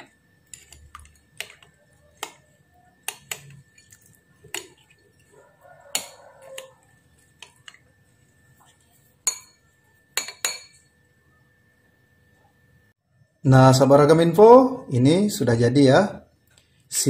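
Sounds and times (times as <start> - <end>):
spoon clinking against glass: 0.0 - 6.8, 9.2 - 10.9.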